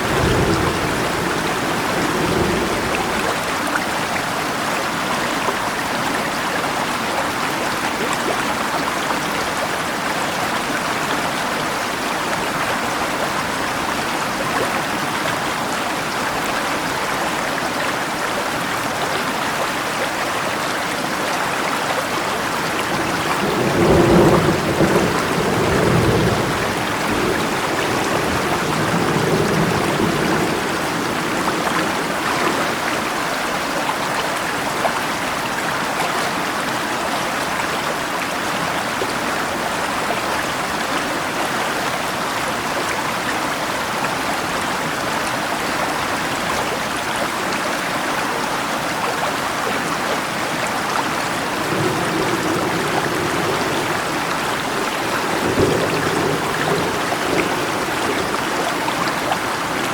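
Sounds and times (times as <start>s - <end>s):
thunder rumbling: 0.0s - 4.1s, 22.4s - 32.9s, 51.5s - 59.8s
flowing river: 0.0s - 59.9s
rain: 0.0s - 59.9s.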